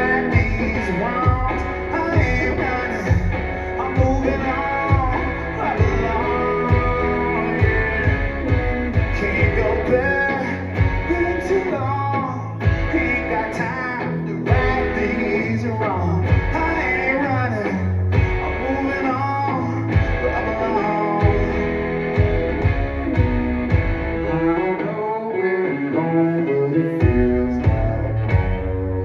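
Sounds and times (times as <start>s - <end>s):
drums with steady beat: 0.0s - 11.6s, 12.6s - 13.3s, 14.5s - 15.2s, 16.3s - 17.0s, 18.1s - 18.6s, 19.9s - 24.4s, 27.0s - 29.0s
bass guitar: 0.0s - 29.0s
guitar: 0.0s - 29.0s
person singing: 0.0s - 29.0s.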